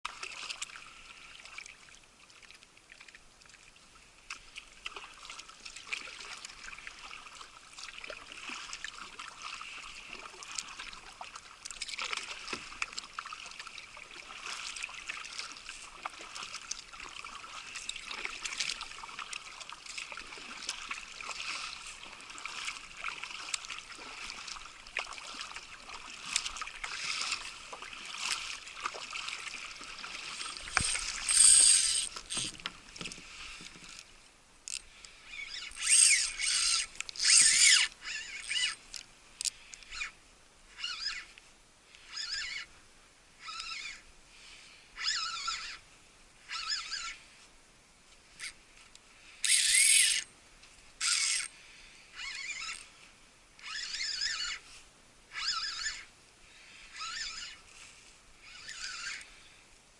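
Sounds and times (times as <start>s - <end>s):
small splashes and drips: 0.1s - 31.4s
water lapping against a kayak: 0.1s - 40.0s.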